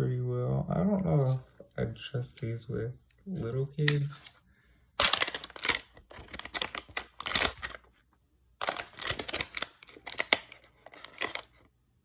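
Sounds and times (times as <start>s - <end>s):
plastic toy clicks and rattles: 5.0s - 7.8s, 8.6s - 11.6s.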